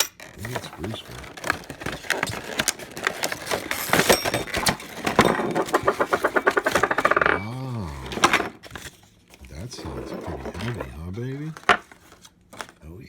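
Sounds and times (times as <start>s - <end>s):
plastic parts clicking and knocking: 0.0s - 7.4s
person humming: 7.4s - 8.3s.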